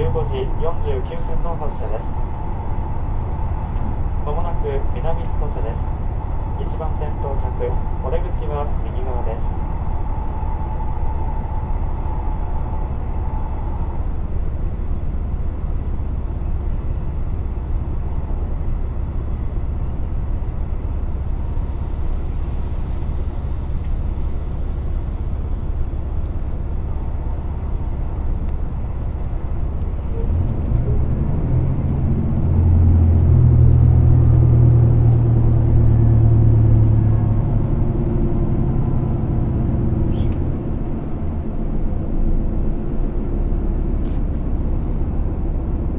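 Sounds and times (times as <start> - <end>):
deep hum: 0.0 - 45.9
train carriage rumbling on rails: 0.0 - 45.9
brief hiss: 21.3 - 25.8.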